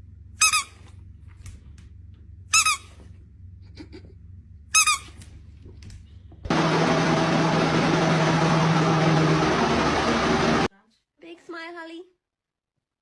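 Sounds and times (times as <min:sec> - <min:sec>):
squeaky dog toy squeaking: 0:00.4 - 0:00.8, 0:02.5 - 0:03.0, 0:04.7 - 0:05.2
loud mechanical hum: 0:03.1 - 0:10.7.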